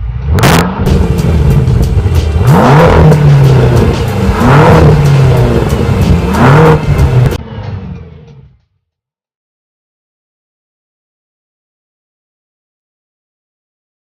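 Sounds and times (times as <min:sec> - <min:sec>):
car engine revving hard: 0:00.3 - 0:08.0.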